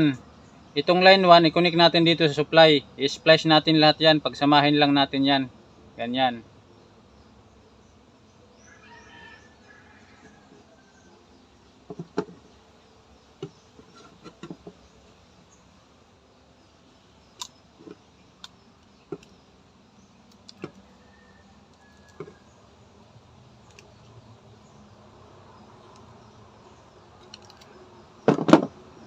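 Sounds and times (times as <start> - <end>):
faint background noise: 0.0 - 29.0
wires clicking and tapping: 27.2 - 27.7.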